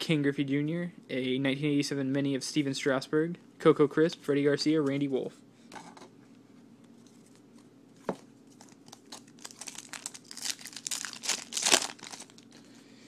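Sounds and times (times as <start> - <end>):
wrapper tearing and crinkling: 8.6 - 12.7.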